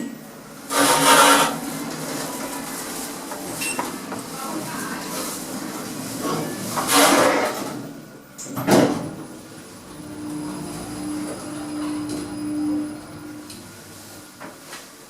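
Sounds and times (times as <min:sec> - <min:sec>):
lift hum: 0:08.9 - 0:14.8.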